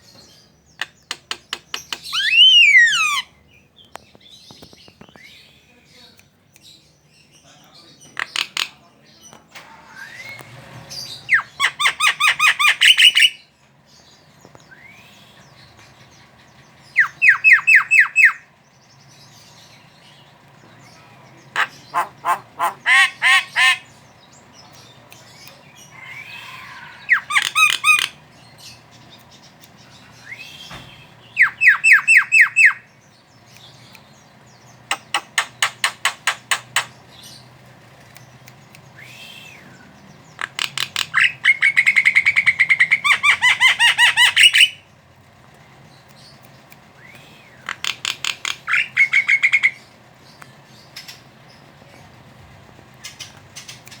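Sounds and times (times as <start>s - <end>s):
myna chattering: 21.0s - 23.8s
bird call notes: 29.2s - 37.0s, 38.2s - 44.9s.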